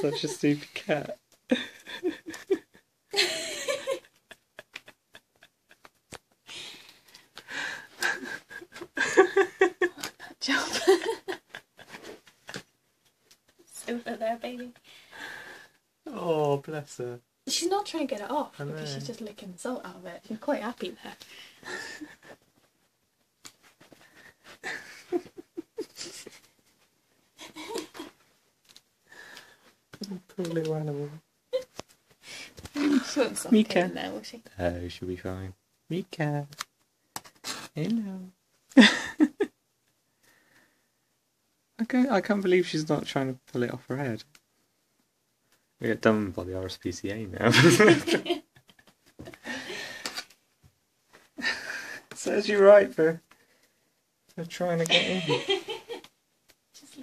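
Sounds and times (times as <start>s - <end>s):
small clicks and crackles: 12.2s - 13.6s, 27.7s - 30.8s, 31.6s - 32.8s.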